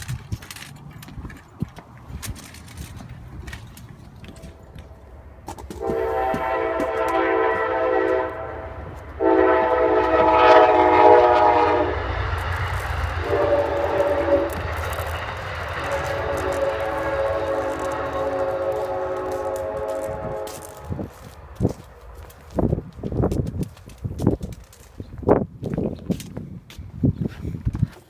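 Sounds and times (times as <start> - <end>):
low rumble of passing train: 0.0 - 27.9
train horn: 5.7 - 21.9.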